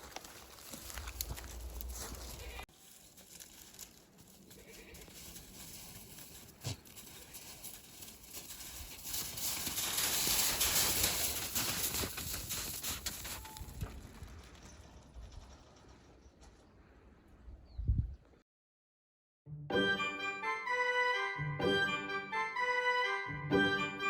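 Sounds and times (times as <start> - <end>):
goat hooves stepping: 0.0 - 16.6.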